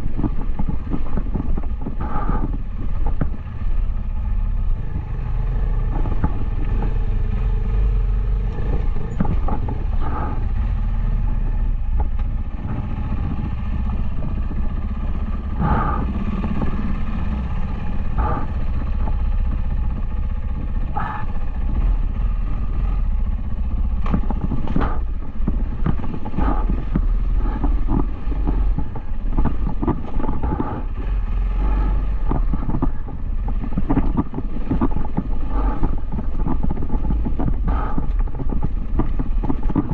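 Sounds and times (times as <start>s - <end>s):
motorcycle engine running: 0.0s - 39.9s
short knocks and clatter: 8.5s - 10.4s.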